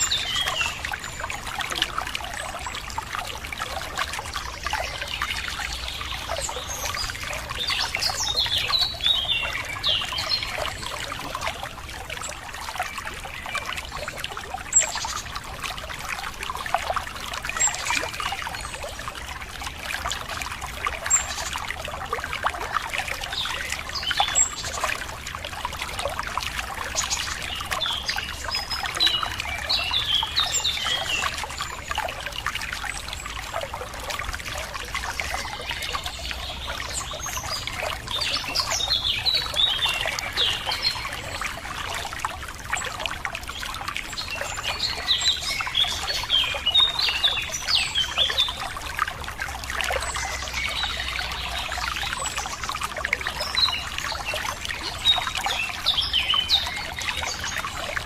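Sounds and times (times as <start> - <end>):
small birds chirping: 0.0 - 14.1, 26.8 - 33.8, 34.5 - 42.1
water trickling and splashing: 0.0 - 58.0.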